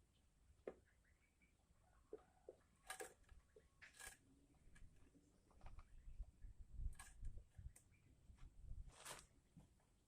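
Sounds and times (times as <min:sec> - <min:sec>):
brief rustle or scrape: 0:08.9 - 0:09.3.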